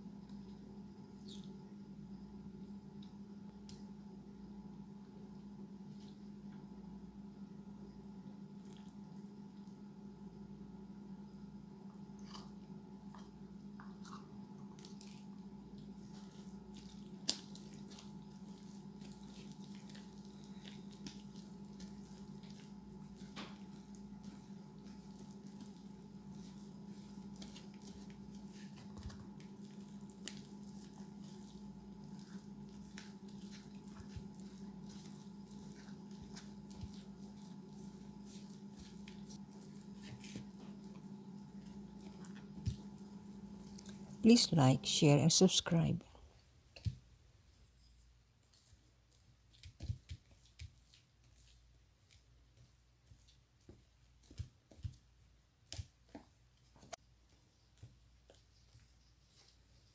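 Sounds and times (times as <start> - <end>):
steady low hum: 0.0 - 46.5.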